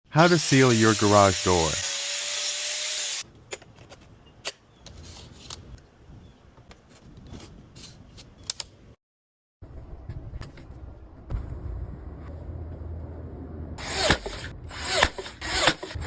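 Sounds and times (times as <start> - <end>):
low rumble: 9.6 - 14.8.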